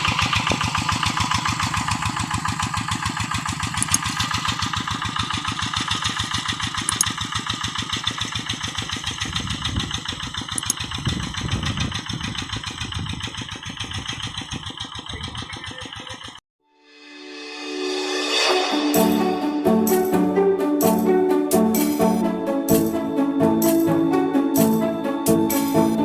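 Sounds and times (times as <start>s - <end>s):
diesel engine chugging: 0.0s - 16.4s.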